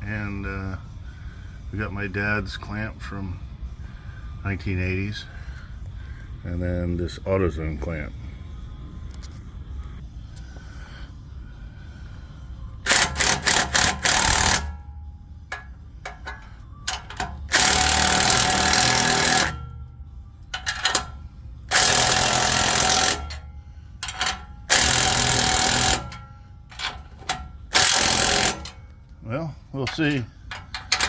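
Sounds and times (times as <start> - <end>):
impact wrench hammering: 12.8 - 14.8, 15.5 - 19.9, 20.5 - 28.9, 29.9 - 31.0.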